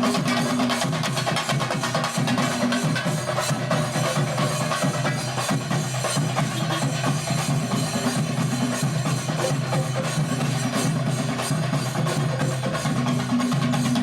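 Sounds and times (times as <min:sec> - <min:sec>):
drums beaten with sticks: 0:00.0 - 0:14.0.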